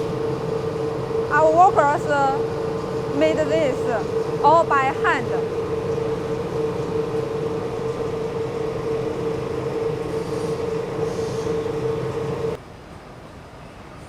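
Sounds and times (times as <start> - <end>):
strong steady tone: 0.0 - 12.6
factory machinery hum: 0.0 - 14.0.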